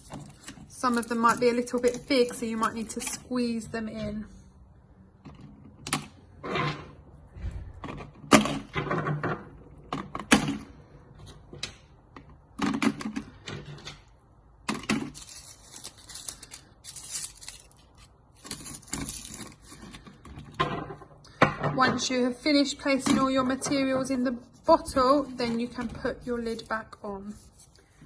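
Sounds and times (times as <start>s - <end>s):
crinkling plastic and leaves: 15.0s - 20.1s.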